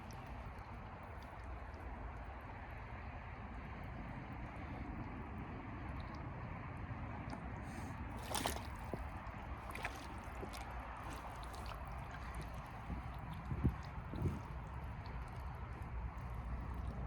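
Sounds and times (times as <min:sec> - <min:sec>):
steady low rumble: 0:00.0 - 0:17.0
rubber boots squelching in mud: 0:08.1 - 0:17.0.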